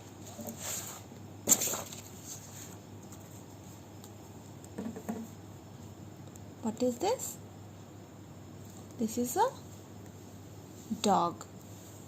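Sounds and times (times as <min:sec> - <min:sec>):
paper rustling: 0:00.3 - 0:03.5.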